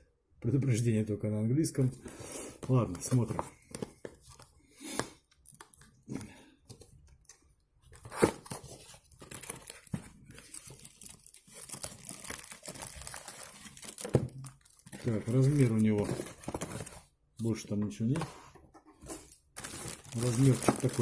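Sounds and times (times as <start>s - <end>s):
cardboard and wrapping rustling: 1.8s - 4.5s, 7.8s - 21.0s.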